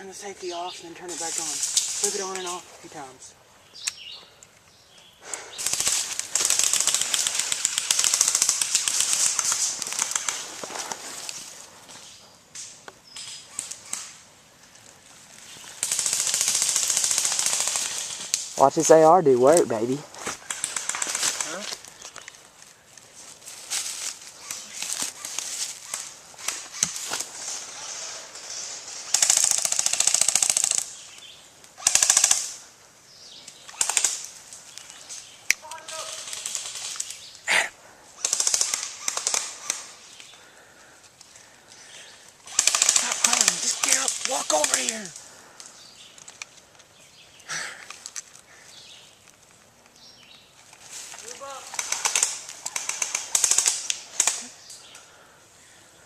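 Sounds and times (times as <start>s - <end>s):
airsoft guns firing full-auto: 5.5s - 10.4s, 15.8s - 18.3s, 20.4s - 21.6s, 29.1s - 30.9s, 31.8s - 32.6s, 33.7s - 34.3s, 38.2s - 40.0s, 42.4s - 45.0s, 51.7s - 54.5s.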